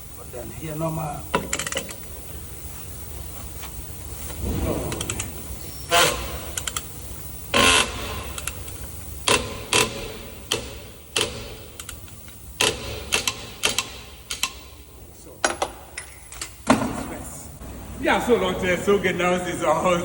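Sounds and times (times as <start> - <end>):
wrench clicking on wheel nuts: 1.3 - 2.1, 7.6 - 14.8.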